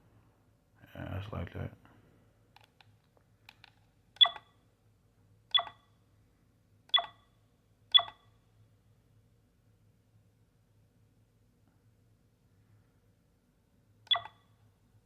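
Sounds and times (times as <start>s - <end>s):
electronic camera beeps: 4.2s - 4.6s, 5.5s - 5.9s, 6.9s - 7.3s, 7.9s - 8.3s, 14.1s - 14.5s.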